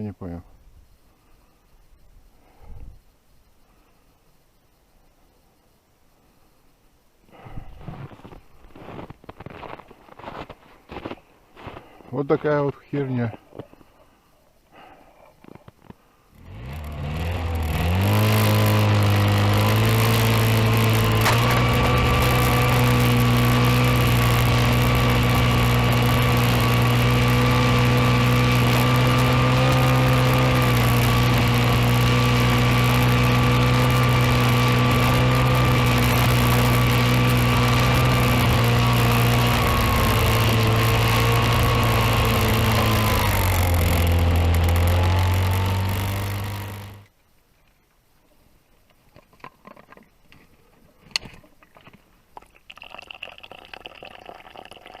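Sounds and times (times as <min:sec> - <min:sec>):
vehicle engine revving: 0:16.4 - 0:47.1.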